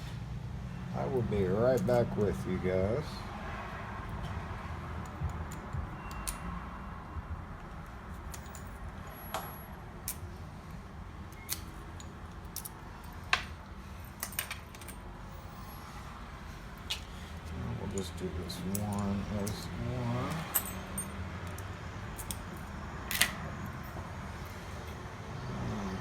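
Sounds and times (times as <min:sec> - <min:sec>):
metallic clicks and clinks: 0:05.0 - 0:06.5, 0:14.0 - 0:15.0, 0:17.9 - 0:24.0.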